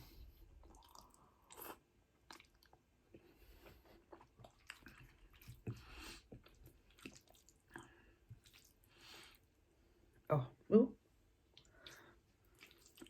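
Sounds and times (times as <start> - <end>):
wet chewing and mouth sounds: 0.6 - 9.5, 11.4 - 13.0.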